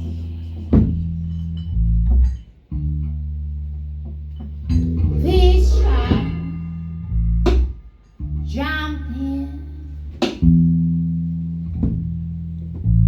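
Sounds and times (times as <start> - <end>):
person singing: 5.2 - 6.8.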